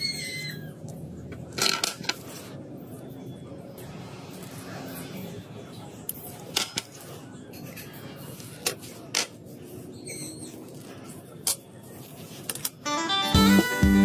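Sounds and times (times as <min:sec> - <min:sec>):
acoustic guitar music: 0:12.8 - 0:14.0.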